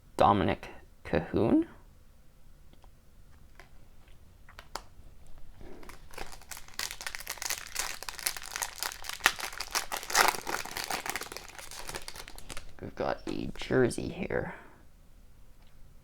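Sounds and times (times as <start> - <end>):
card pack wrapper crinkling: 3.4 - 4.9, 5.6 - 13.7.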